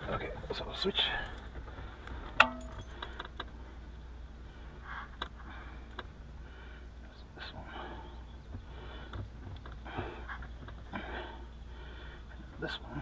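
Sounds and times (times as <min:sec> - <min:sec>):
metallic clink: 0:02.4 - 0:03.0.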